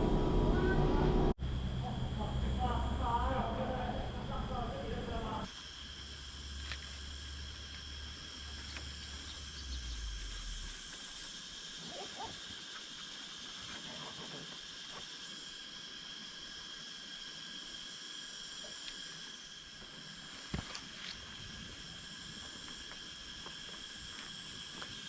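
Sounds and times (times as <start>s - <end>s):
low rumble: 0.0s - 5.5s, 6.4s - 10.9s
high hiss: 1.4s - 25.0s.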